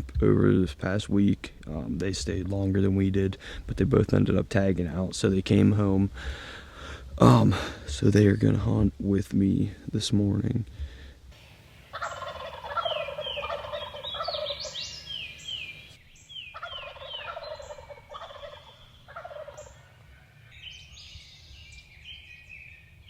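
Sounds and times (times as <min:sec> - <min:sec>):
turkeys gobbling: 0:11.4 - 0:20.3
high bird calls: 0:11.4 - 0:23.0.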